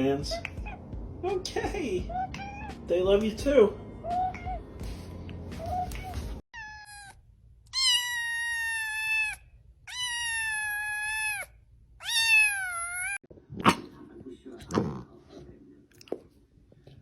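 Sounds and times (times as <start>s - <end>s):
cat meowing: 2.1s - 2.8s, 5.7s - 13.2s.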